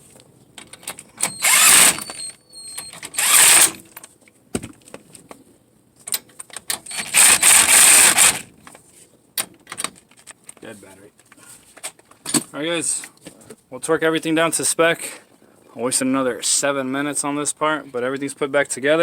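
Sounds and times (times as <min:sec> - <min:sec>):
cordless power tool bursts: 0:01.2 - 0:03.8, 0:06.9 - 0:08.5.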